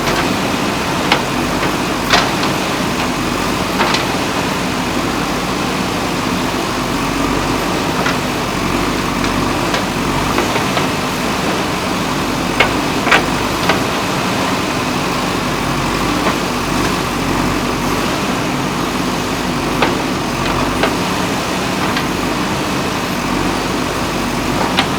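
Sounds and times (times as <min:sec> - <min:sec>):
sharp knocks: 0:00.0 - 0:04.5, 0:07.8 - 0:17.2, 0:19.6 - 0:22.6
diesel engine running: 0:00.0 - 0:24.9.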